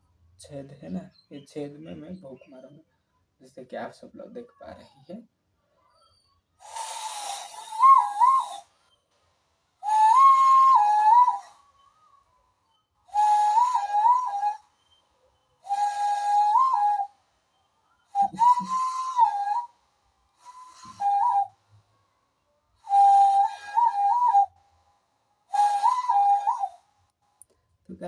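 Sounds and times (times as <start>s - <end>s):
cupped-hand whistle blasts: 6.6s - 8.7s, 9.8s - 11.6s, 20.4s - 21.5s, 22.8s - 24.6s, 25.5s - 26.8s.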